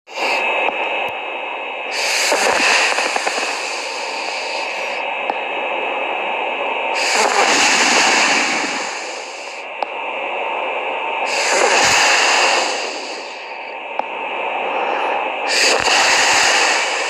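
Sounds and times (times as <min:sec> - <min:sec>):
constant hiss: 0:00.1 - 0:17.0
person snoring: 0:01.9 - 0:05.0, 0:07.0 - 0:09.6, 0:11.3 - 0:13.6, 0:14.8 - 0:17.0.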